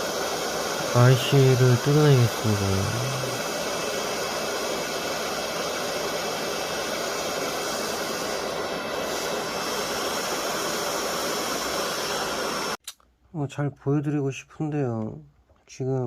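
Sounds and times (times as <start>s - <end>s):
hot air blower rushing: 0.0s - 12.8s.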